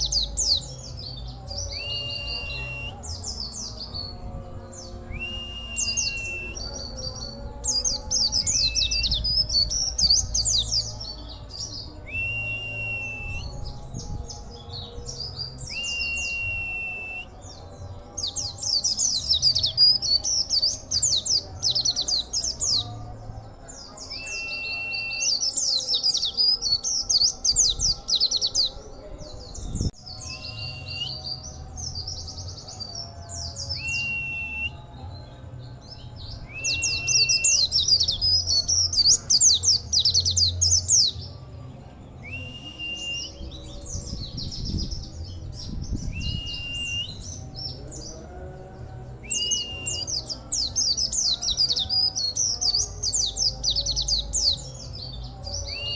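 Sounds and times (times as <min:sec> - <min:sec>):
bird twittering song: 0:00.0 - 0:23.1, 0:42.1 - 0:55.9.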